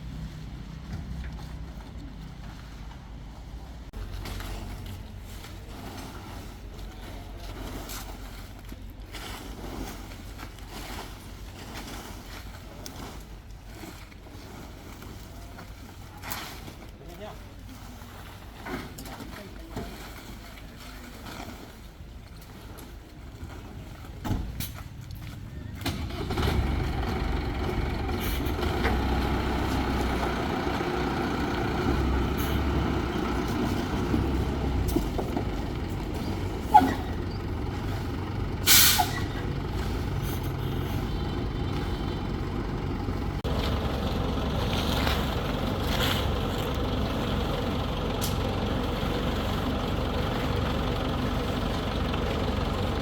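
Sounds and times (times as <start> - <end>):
crane engine running: 25.9 - 53.0
loud hiss of released air: 38.6 - 39.2.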